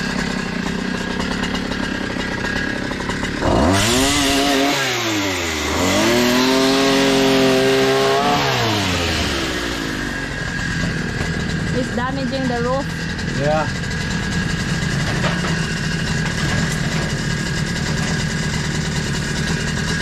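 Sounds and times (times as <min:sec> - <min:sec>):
two-stroke pole saw engine revving: 0:00.0 - 0:20.0
chain cutting branches: 0:00.4 - 0:10.2.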